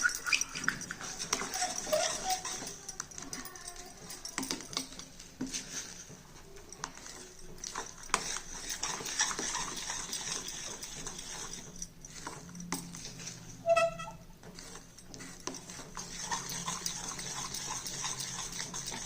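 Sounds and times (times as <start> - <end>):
metal spatula scraping a pan: 0.0 - 2.8, 6.8 - 19.0.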